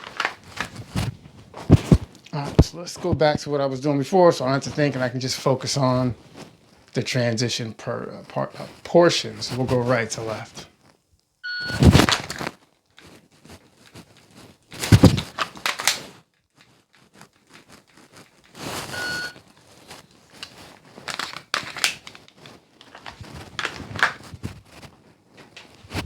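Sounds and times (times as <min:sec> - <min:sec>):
gear and pistol rustling and clicking: 0:00.0 - 0:02.2, 0:11.8 - 0:26.0
electronic timer beep: 0:11.4 - 0:11.8, 0:18.9 - 0:19.4.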